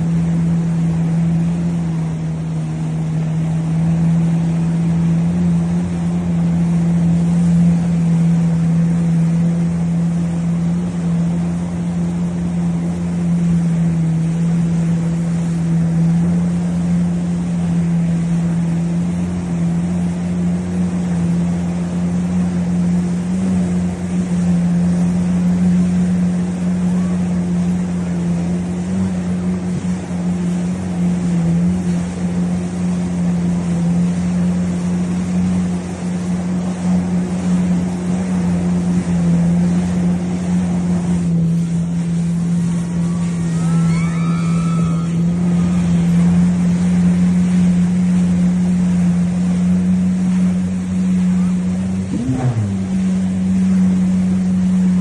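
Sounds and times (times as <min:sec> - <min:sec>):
motorboat engine running: 0:00.0 - 0:55.0
wind and water noise: 0:00.0 - 0:55.0.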